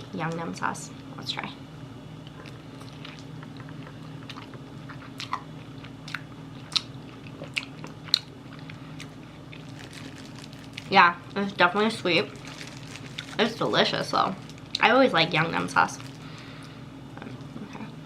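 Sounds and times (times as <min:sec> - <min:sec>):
biting and chewing fried chicken: 0:02.3 - 0:10.9, 0:12.2 - 0:13.4.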